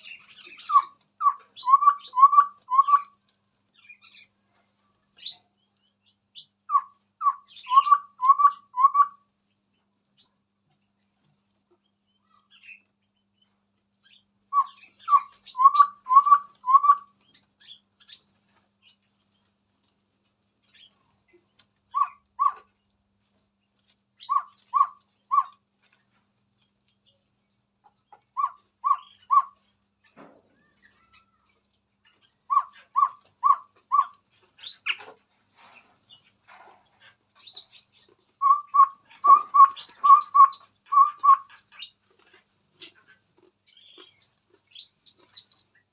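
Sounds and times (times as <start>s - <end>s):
bird hooting notes: 0.7s - 3.1s, 6.7s - 9.2s, 14.6s - 17.1s, 38.4s - 41.6s.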